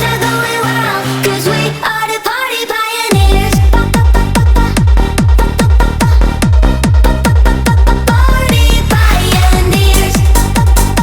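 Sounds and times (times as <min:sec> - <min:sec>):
kick drum beat: 0:03.1 - 0:11.0.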